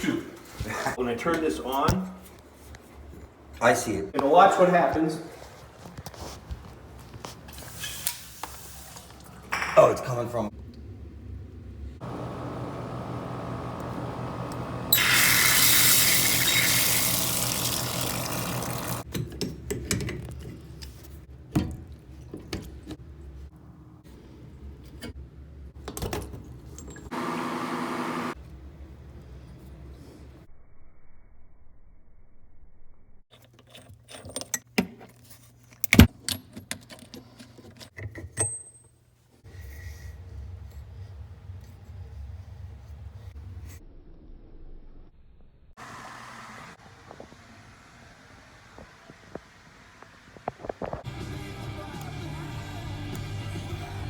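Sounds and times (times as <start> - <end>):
water tap running: 14.9 - 19.0.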